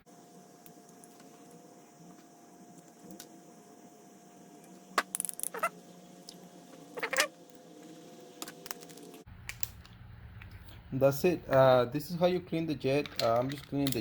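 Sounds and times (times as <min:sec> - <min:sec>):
faint steady hum: 0:00.0 - 0:14.0
small metal parts clattering: 0:12.9 - 0:14.0.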